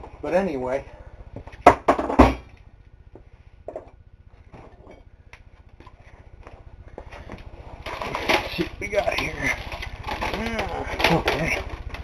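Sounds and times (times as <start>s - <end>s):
broken pieces clicking and rattling: 7.8s - 12.0s.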